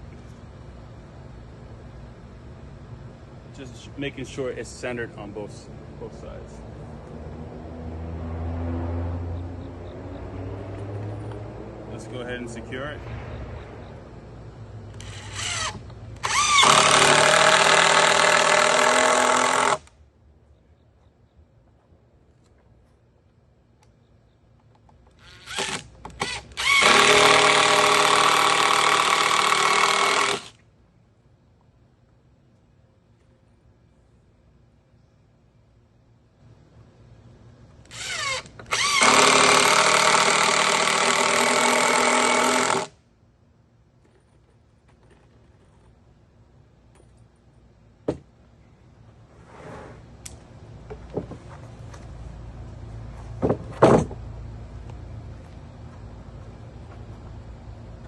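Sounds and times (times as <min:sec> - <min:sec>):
power drill driving a screw: 0:15.0 - 0:19.9, 0:25.2 - 0:30.6, 0:37.9 - 0:42.9
brief scrape: 0:49.3 - 0:50.1.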